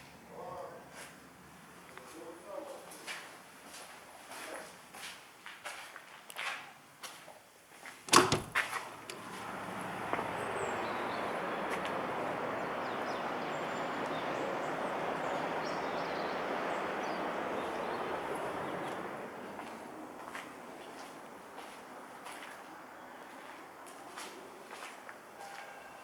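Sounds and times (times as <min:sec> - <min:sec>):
sharp knocks and clicks: 0:08.1 - 0:09.4
outdoor ambience: 0:08.1 - 0:26.0.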